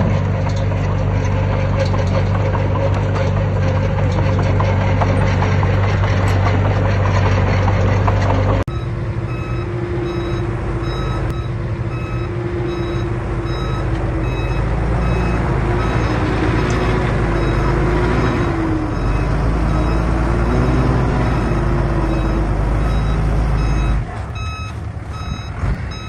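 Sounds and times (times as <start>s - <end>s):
diesel machinery running: 0.0s - 26.0s
metal clanking: 0.0s - 26.0s
back-up alarm beeping: 8.7s - 26.0s.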